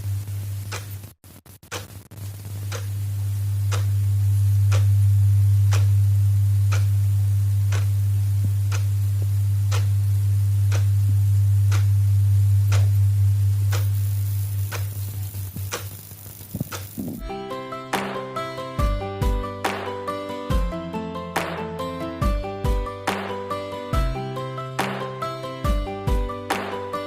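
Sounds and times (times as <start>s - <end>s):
loud steady low hum: 2.2s - 17.3s
clock ticking: 8.7s - 8.9s.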